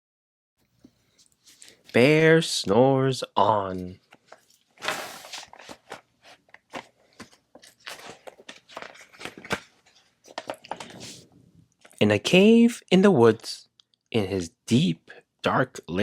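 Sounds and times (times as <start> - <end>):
paper rustling: 3.7 - 11.3.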